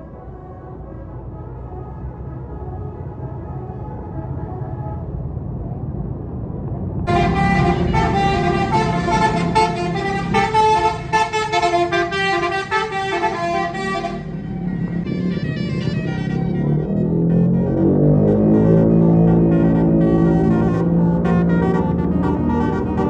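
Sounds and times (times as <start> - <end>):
bus engine running: 0.0 - 23.0
bus horn playing a melody: 7.1 - 23.0.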